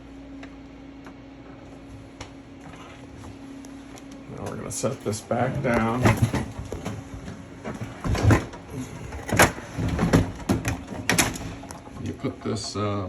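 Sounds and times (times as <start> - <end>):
pinball playfield knocks and clunks: 4.4 - 13.0.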